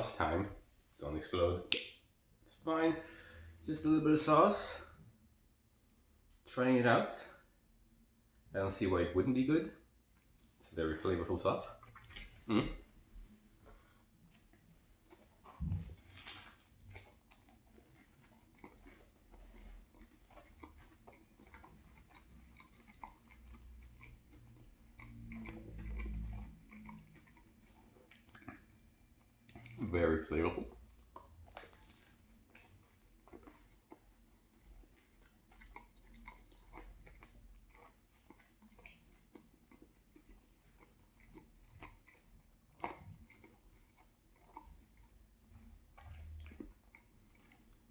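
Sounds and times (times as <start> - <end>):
close chewing with mouth clicks: 10.0 - 47.9
wet mouth clicks: 15.0 - 28.8.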